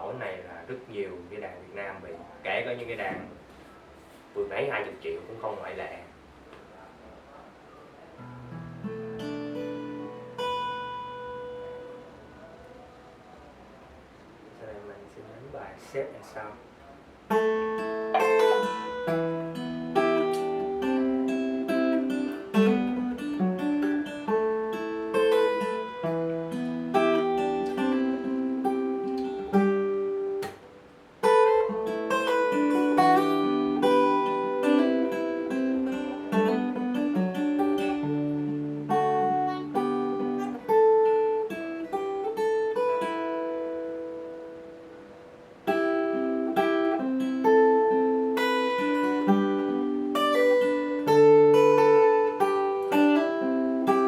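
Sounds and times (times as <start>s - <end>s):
acoustic guitar picked chords: 8.1s - 14.2s, 17.1s - 54.0s.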